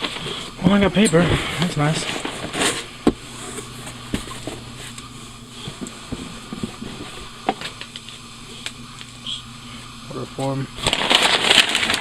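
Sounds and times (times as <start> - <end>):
packing paper rustling: 0.0 - 3.0, 10.8 - 12.0.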